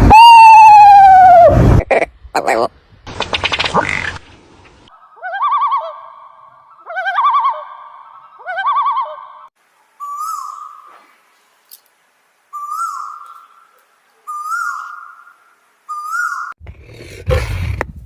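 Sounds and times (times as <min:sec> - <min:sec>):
bird whistled call: 0:10.0 - 0:10.9, 0:12.5 - 0:13.7, 0:14.3 - 0:15.3, 0:15.9 - 0:16.6.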